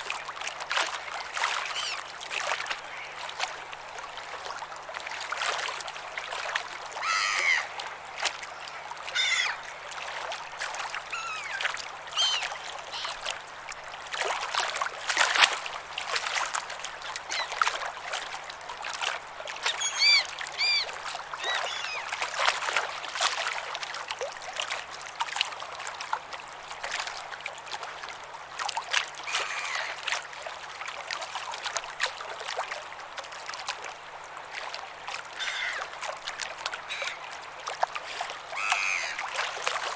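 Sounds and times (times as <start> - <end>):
water lapping and splashing: 0.0 - 39.9
birds calling: 1.6 - 2.1, 7.0 - 7.8, 8.6 - 9.8, 11.0 - 13.3, 17.1 - 17.7, 19.6 - 22.3, 29.3 - 30.0, 35.4 - 35.9, 36.8 - 37.3, 38.5 - 39.3.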